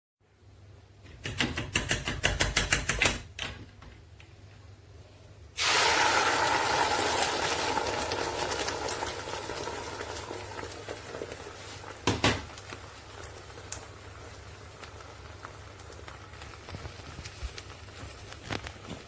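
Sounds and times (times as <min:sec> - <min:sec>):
sizzling in cooking pot: 0:05.5 - 0:19.0.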